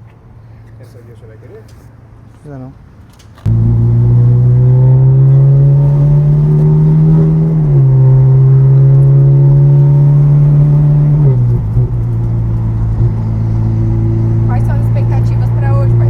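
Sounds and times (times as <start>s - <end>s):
car engine accelerating: 3.5s - 16.0s.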